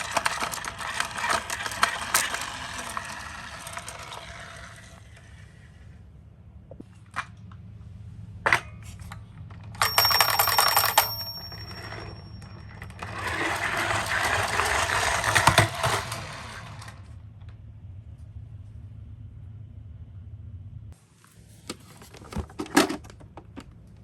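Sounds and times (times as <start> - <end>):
toy cars rattling on a slope: 0.0 - 5.9, 8.5 - 17.2.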